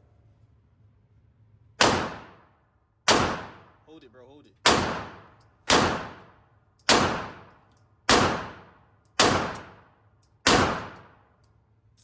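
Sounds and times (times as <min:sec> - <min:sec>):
pistol shots: 0:01.8 - 0:02.4, 0:03.1 - 0:03.8, 0:04.6 - 0:07.5, 0:08.1 - 0:11.2.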